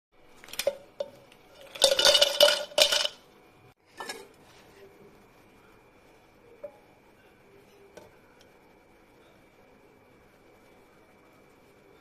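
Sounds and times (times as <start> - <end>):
ice cubes clinking into glass: 1.6 - 3.2.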